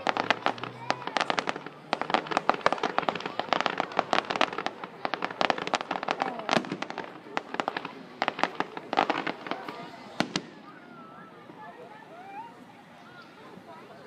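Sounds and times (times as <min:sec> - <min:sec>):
fireworks cracking and popping: 0:00.0 - 0:11.6.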